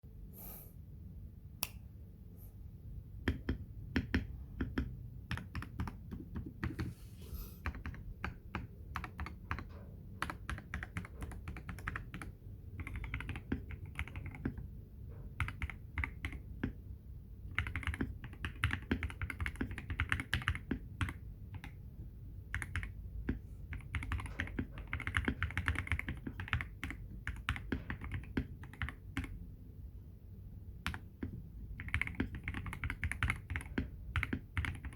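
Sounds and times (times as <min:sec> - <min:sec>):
mechanical keyboard typing: 0:03.2 - 0:06.9, 0:07.6 - 0:14.7, 0:15.3 - 0:16.8, 0:17.5 - 0:21.8, 0:22.5 - 0:29.4, 0:30.8 - 0:34.9.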